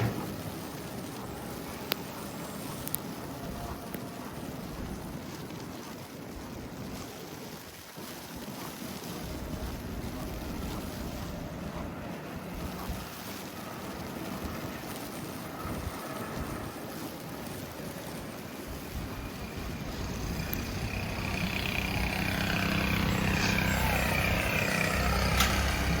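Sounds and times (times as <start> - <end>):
vehicle engine hum: 17.0 - 26.0.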